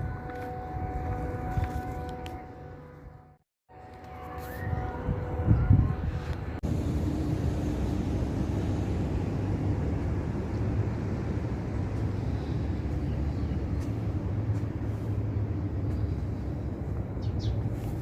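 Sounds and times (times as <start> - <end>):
air conditioning unit humming: 6.7 - 14.4.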